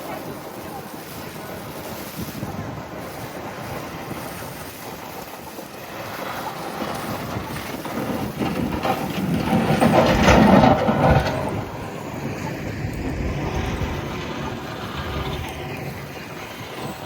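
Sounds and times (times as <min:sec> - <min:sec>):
large vehicle passing: 0:09.4 - 0:17.0.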